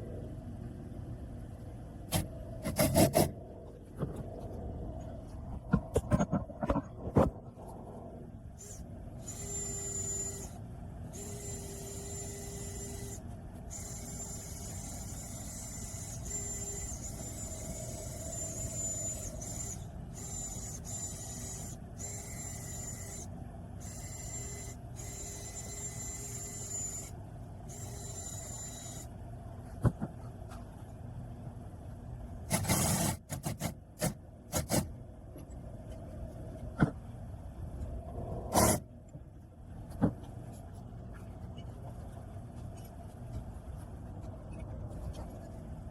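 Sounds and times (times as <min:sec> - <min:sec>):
power tool whining and rasping: 0:08.6 - 0:10.6, 0:11.2 - 0:27.1.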